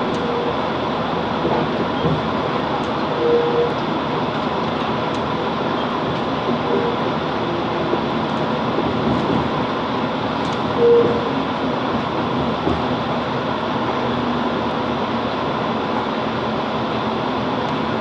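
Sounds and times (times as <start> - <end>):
train carriage interior noise: 0.0 - 18.0.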